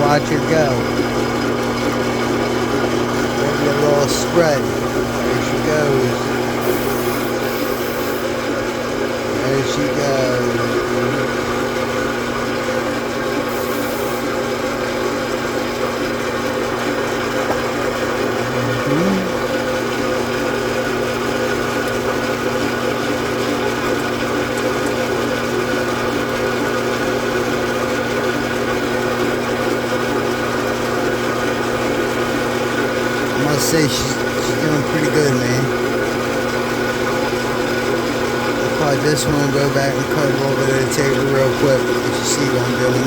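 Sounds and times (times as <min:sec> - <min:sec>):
lathe motor humming: 0:00.0 - 0:43.0.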